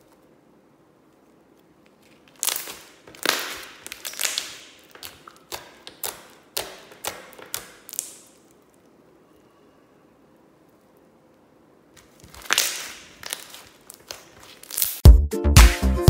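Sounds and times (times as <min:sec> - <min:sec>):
slime popping and crackling: 0:01.9 - 0:08.9, 0:12.0 - 0:15.0.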